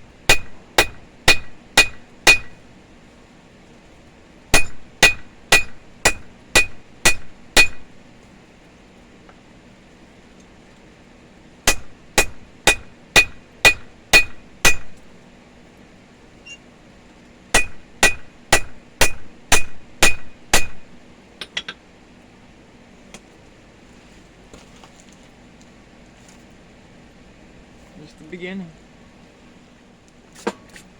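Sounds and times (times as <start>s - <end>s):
hammer striking steel on anvil: 0.3s - 2.6s, 4.5s - 8.0s, 11.7s - 15.0s, 17.6s - 21.8s.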